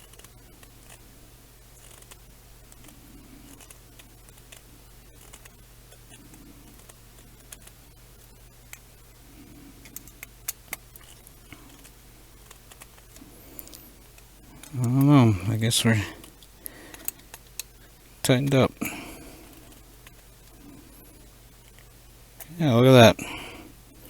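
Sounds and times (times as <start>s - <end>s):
steady low hum: 0.0s - 24.0s
hex driver clicking and scraping: 1.8s - 7.8s.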